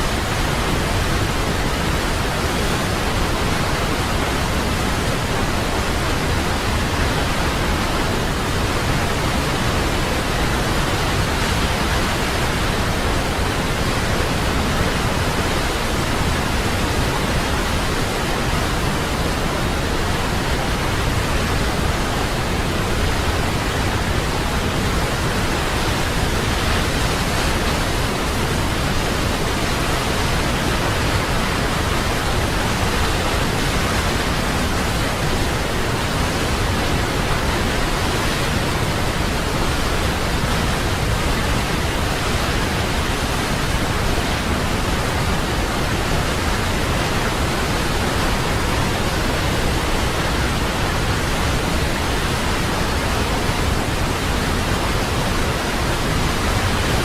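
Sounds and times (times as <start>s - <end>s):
waterfall rushing: 0.0s - 57.0s.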